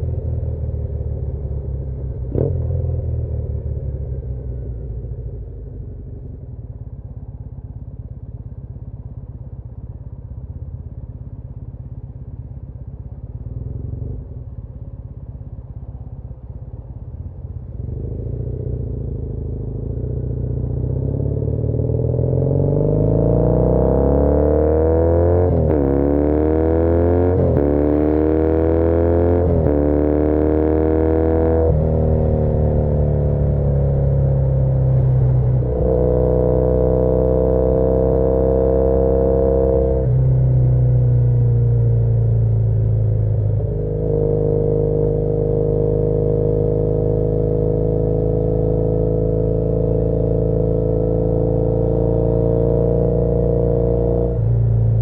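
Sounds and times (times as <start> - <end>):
motorcycle engine revving: 17.3 - 55.0.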